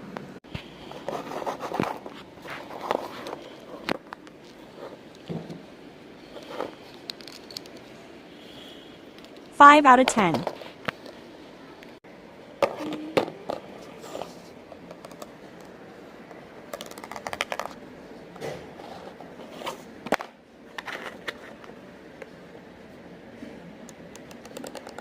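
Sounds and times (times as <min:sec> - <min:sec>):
plastic fidget toy clicking: 0:24.1 - 0:25.0.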